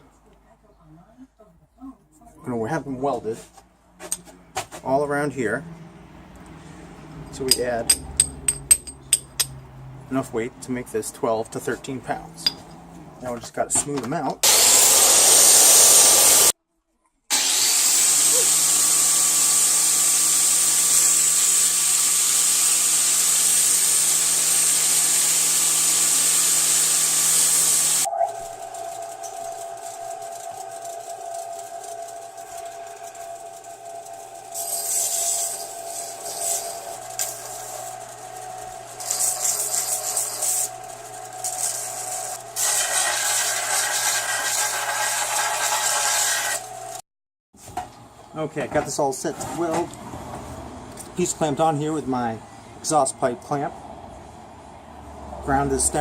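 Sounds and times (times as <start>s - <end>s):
angle grinder grinding steel: 6.4s - 9.7s, 14.4s - 16.5s, 17.3s - 47.0s.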